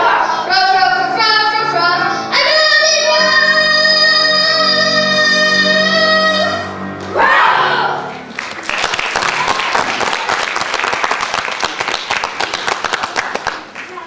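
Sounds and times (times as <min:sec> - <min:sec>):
child singing: 0:00.0 - 0:06.7
instrumental backing music: 0:00.0 - 0:08.7.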